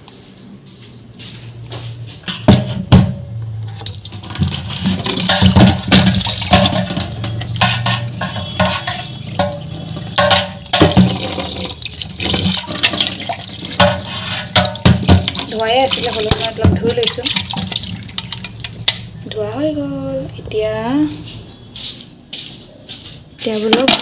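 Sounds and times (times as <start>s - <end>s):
water splashing: 3.7s - 18.8s
tap water running into sink: 10.7s - 18.9s.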